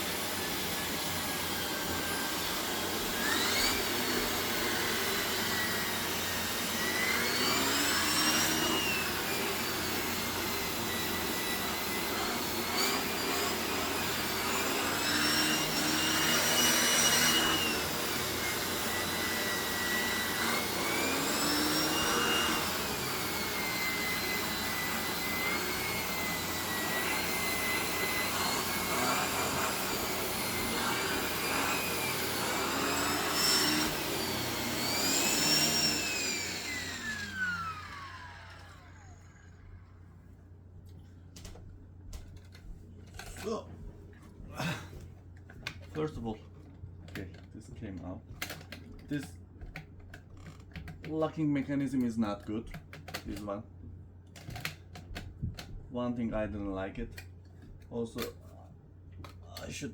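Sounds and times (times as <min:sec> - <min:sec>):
vacuum cleaner running: 0:00.0 - 0:40.0.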